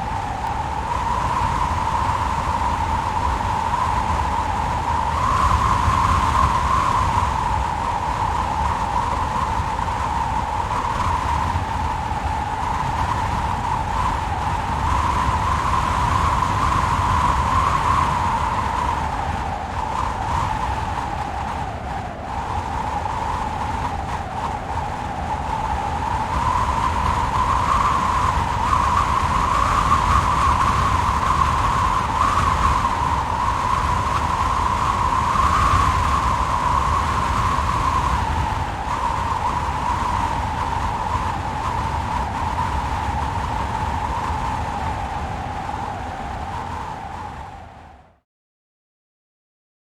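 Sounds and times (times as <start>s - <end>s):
whistling wind gusts: 0.0s - 48.2s.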